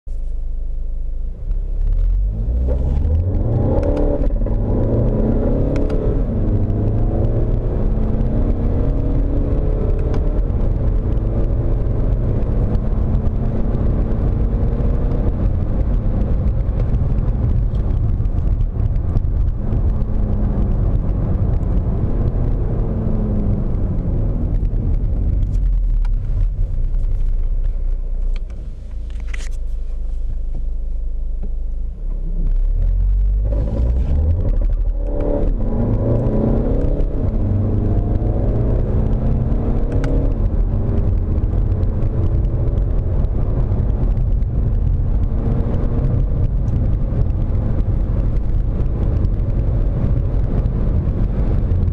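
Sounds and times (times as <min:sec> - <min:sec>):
diesel car engine accelerating: 0:00.1 - 0:51.9.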